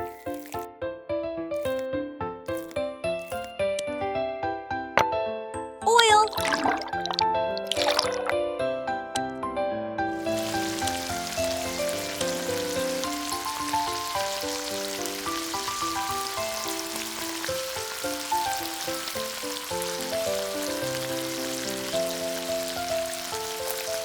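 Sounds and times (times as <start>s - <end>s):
food sizzling in hot oil: 0.0s - 0.7s, 2.5s - 3.5s, 6.4s - 8.3s, 10.2s - 24.0s
background music: 10.1s - 24.0s.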